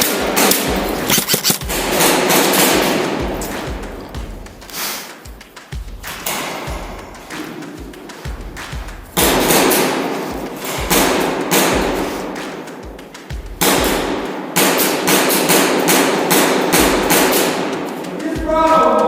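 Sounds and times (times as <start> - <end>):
music with heavy percussive hits: 0.0 - 19.0
deep bass thumps: 6.7 - 7.2.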